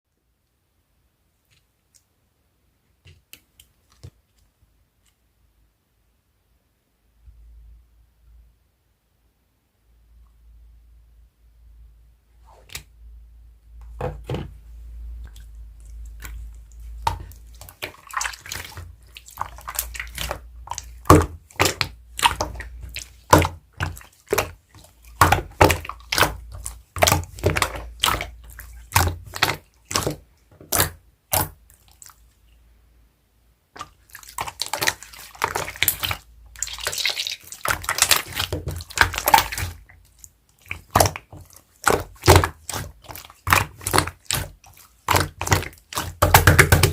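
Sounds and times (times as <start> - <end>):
slime popping and crackling: 15.9 - 31.6, 33.8 - 39.9, 40.6 - 46.9.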